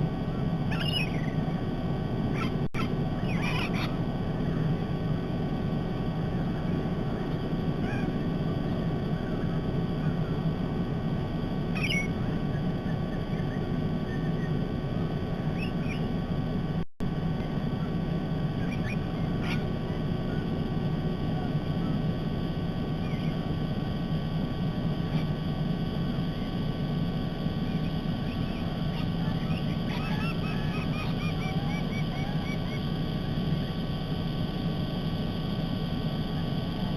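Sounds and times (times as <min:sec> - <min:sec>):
low outdoor rumble: 0:00.0 - 0:36.9
faint short bird calls: 0:00.6 - 0:01.7, 0:02.3 - 0:04.7, 0:06.2 - 0:10.5, 0:11.7 - 0:14.6, 0:18.5 - 0:20.5, 0:27.6 - 0:33.7.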